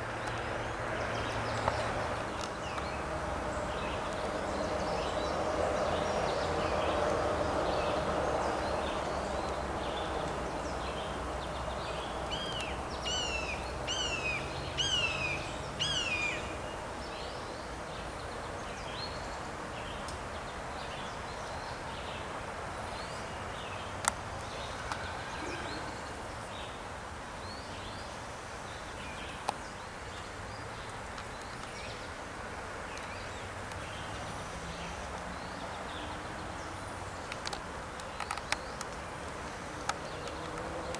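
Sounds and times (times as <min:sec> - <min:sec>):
birds singing and calling: 0:03.6 - 0:21.6.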